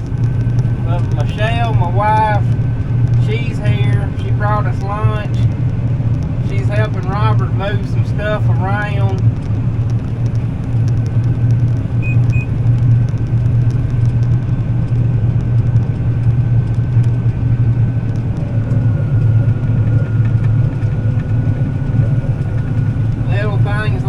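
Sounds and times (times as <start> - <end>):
combine harvester engine drone: 0.0 - 24.0
faint steady whine: 0.0 - 24.0
short beeps: 12.0 - 12.6.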